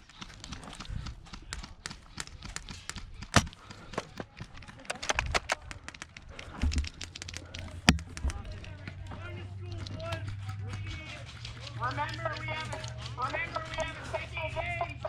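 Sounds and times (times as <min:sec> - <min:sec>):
running footsteps: 0:00.0 - 0:15.0
sharp clicks: 0:00.0 - 0:15.0.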